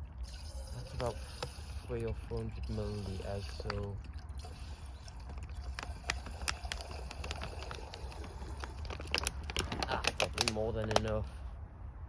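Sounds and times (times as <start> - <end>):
camp cooking gear clicking: 7.2 - 11.2.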